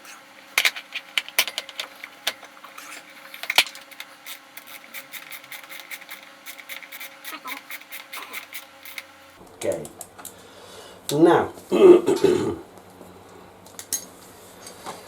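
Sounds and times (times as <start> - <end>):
metal parts and tools clicking: 0.0 - 9.2.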